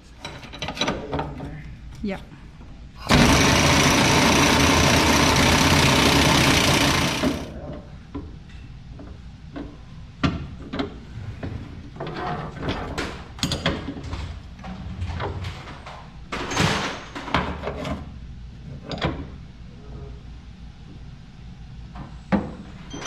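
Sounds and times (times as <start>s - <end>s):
impact wrench hammering: 3.1s - 7.5s.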